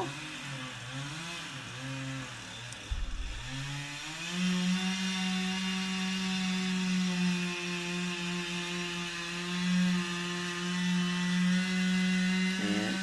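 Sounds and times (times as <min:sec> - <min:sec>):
chainsaw revving and cutting: 0:00.0 - 0:13.0
low thump: 0:02.8 - 0:04.4.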